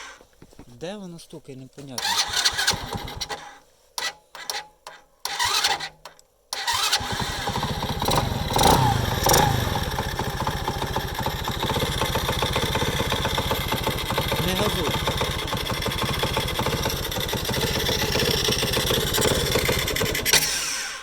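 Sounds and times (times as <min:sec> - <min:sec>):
moped engine starting and running: 0:02.0 - 0:21.0
engine knock: 0:07.0 - 0:20.4.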